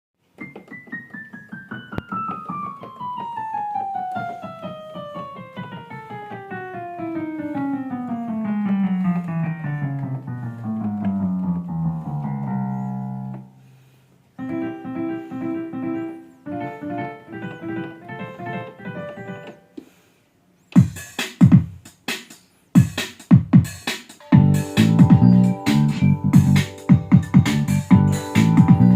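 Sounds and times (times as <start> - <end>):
electronic keyboard piano notes: 0.3 - 19.8, 24.2 - 28.9
repeating pattern of notes: 24.2 - 28.9.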